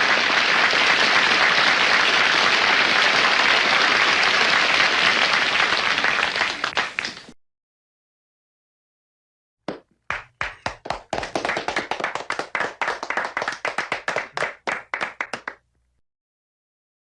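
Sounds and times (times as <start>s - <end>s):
people clapping: 0.0s - 7.4s, 9.7s - 15.7s.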